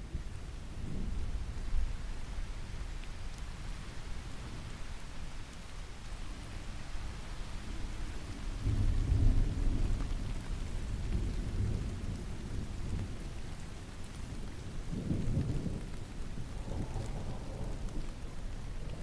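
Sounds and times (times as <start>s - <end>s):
steady rain: 0.0s - 19.0s
distant thunder rumbles: 14.3s - 19.0s.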